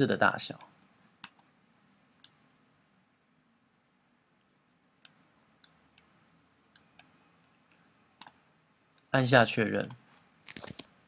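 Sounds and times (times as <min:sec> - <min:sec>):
computer mouse clicks: 0:00.6 - 0:01.5, 0:02.2 - 0:02.4, 0:05.0 - 0:08.4, 0:09.8 - 0:11.0.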